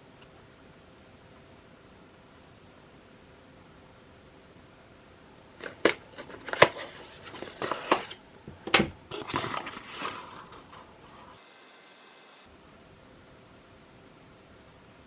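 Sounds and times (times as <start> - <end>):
crinkly rustling: 5.6 - 8.2, 9.1 - 11.4.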